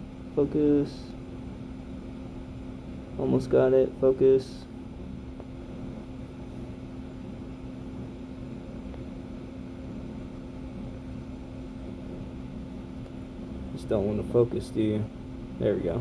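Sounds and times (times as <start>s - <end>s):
mechanical room hum: 0.0s - 16.0s.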